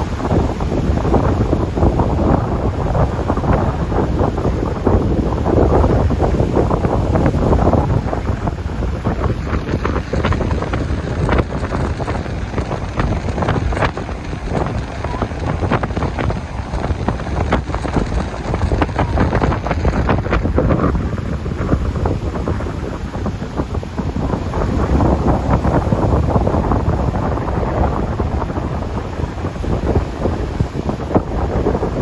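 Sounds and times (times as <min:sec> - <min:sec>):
wind buffeting microphone: 0:00.0 - 0:32.0.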